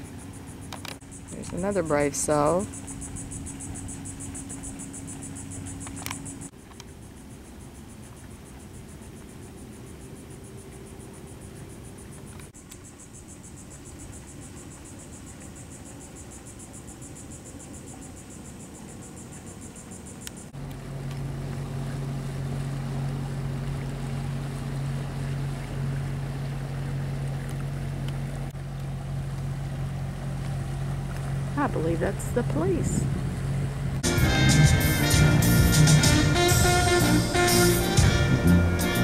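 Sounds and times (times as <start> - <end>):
insects trilling: 0.0 - 20.6
low motor hum: 0.0 - 39.0.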